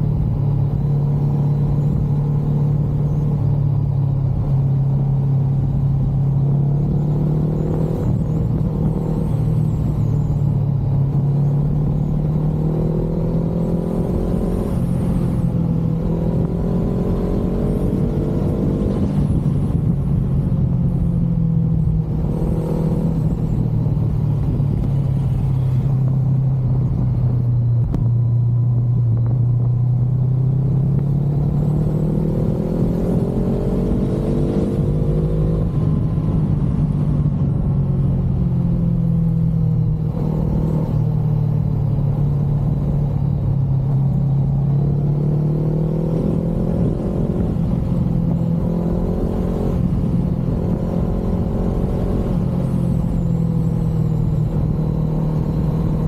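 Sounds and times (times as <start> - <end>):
motorcycle engine revving: 0.0 - 56.0
low rumble: 17.4 - 45.4.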